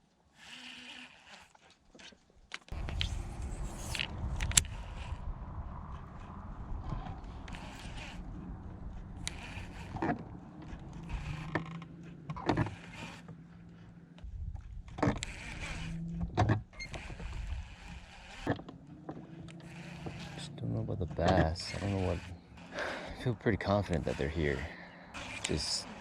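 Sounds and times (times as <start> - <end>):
electric trolling motor humming: 0.3 - 1.8, 2.7 - 26.0
low rumble: 2.7 - 17.8
knocks and clicks against boat: 16.2 - 17.4, 21.0 - 21.6.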